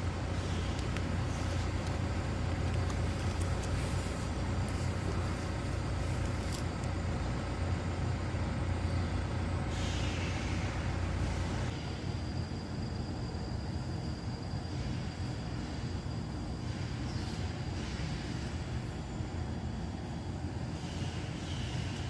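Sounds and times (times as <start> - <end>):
faint fire crackles: 0.0 - 7.6
wood stove fire roaring: 0.0 - 11.8.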